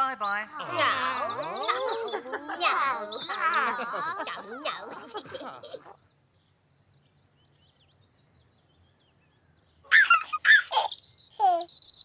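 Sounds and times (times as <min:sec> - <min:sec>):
high squeaky chirping calls: 0:00.0 - 0:04.3, 0:09.9 - 0:12.0
faint bird chirps: 0:05.9 - 0:12.0.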